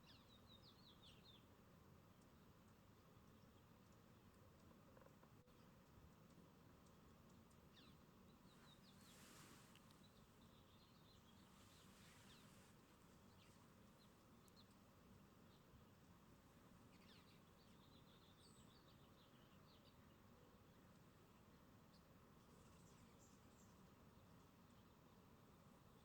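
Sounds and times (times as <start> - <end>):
low steady hiss: 0.0 - 26.0
small birds chirping: 0.0 - 26.0.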